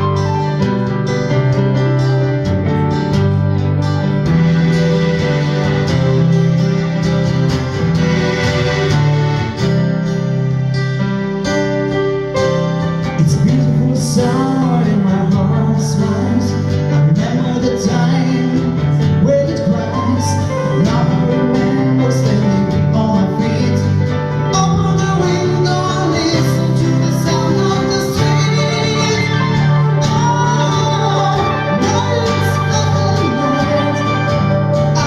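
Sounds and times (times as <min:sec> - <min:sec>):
guitars playing: 0:00.0 - 0:35.0
low bass line: 0:00.0 - 0:35.0
person singing: 0:12.9 - 0:35.0.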